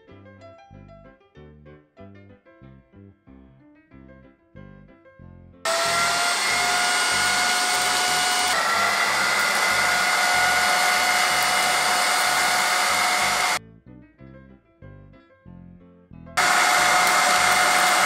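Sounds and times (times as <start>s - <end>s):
vacuum cleaner running: 5.7s - 13.6s, 16.4s - 18.0s.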